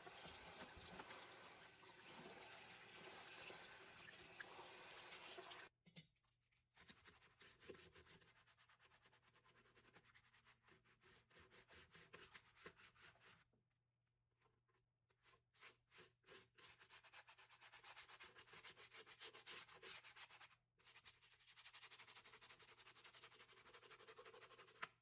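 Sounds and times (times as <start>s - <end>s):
faint running water: 0.0s - 5.7s.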